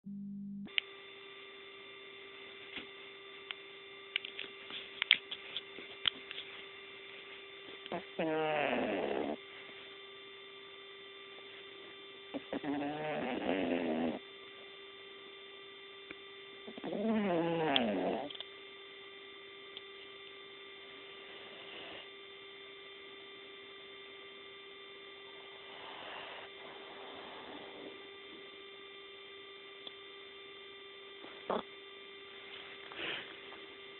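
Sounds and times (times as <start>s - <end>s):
electrical hum: 0.0s - 33.9s
cat snoring breaths: 8.0s - 9.4s, 12.4s - 14.2s, 16.7s - 18.3s, 21.2s - 22.2s, 25.3s - 28.5s, 32.9s - 33.5s.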